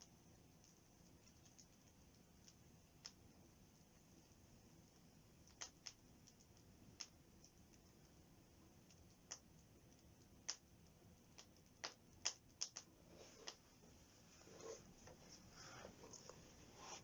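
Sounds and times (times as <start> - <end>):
campfire crackling and popping: 0.5 - 3.4, 4.0 - 8.2, 8.8 - 13.6.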